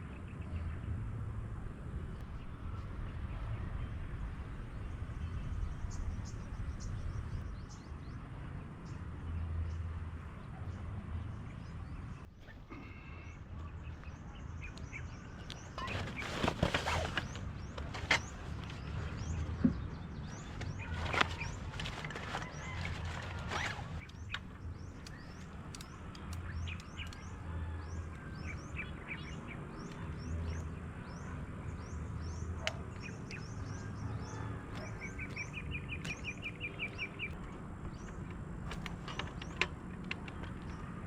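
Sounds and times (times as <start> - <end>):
steady low rumble: 0.0 - 8.2
birds chirping: 0.0 - 41.0.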